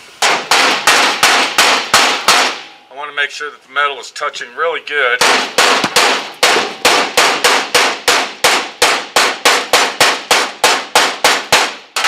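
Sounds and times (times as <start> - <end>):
hammer striking sheet metal: 0.2 - 2.8, 5.2 - 12.0.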